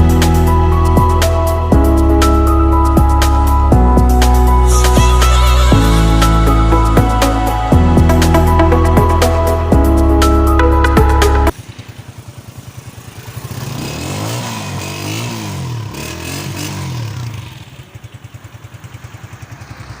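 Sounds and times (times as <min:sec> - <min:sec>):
motorcycle engine idling and revving: 0:00.0 - 0:20.0.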